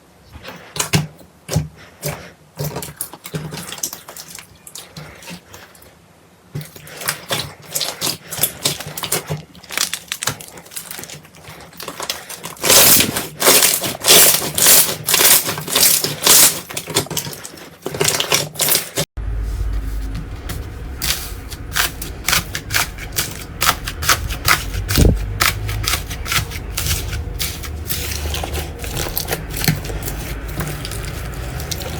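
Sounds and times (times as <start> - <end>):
slime crackling and popping: 7.0 - 19.0, 20.9 - 31.9.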